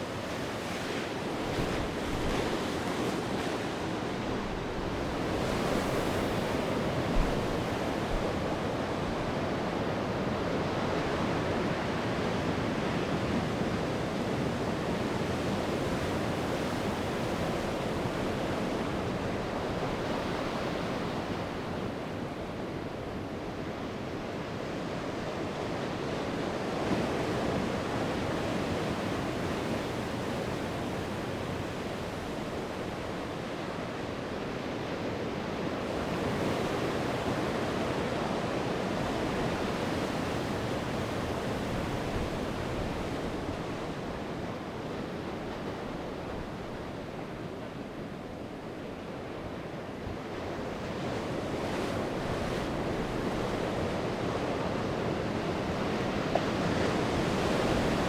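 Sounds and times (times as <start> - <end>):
sea waves breaking on shore: 0.0 - 58.0.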